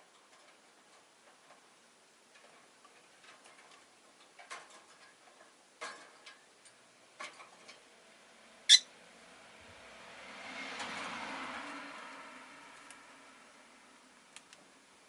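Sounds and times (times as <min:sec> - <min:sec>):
lovebird high chirp: 0:08.7 - 0:08.9.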